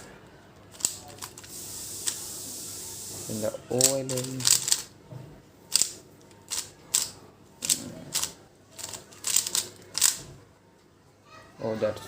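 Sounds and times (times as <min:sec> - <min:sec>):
plastic puzzle cube clicking: 0:00.7 - 0:02.2, 0:03.8 - 0:04.9, 0:05.7 - 0:10.2.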